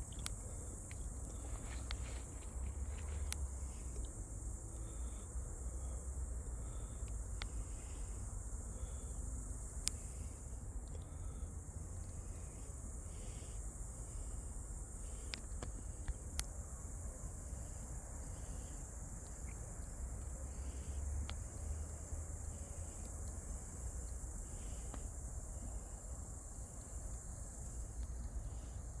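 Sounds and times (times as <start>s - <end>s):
insects chirring: 0.0s - 29.0s.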